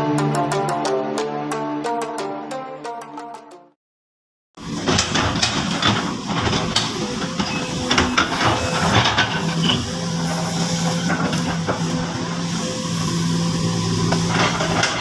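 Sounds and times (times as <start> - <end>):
excavator engine running: 4.6 - 15.0
knocks and clanks: 4.8 - 9.8.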